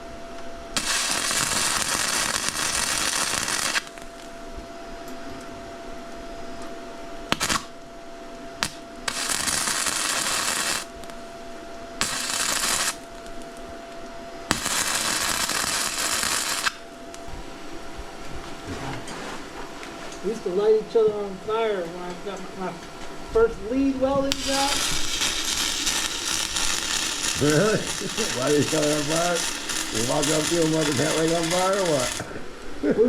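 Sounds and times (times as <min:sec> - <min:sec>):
faint steady hum: 0:00.0 - 0:33.0
welder crackling hiss: 0:00.8 - 0:04.4, 0:07.3 - 0:07.8, 0:08.6 - 0:11.2, 0:12.0 - 0:13.7, 0:14.5 - 0:17.3, 0:24.3 - 0:32.6.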